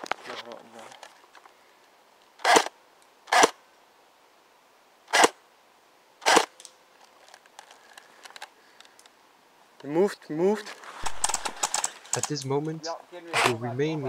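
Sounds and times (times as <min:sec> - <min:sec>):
airsoft gun shots: 0:03.3 - 0:03.6, 0:05.1 - 0:05.4, 0:06.2 - 0:06.5.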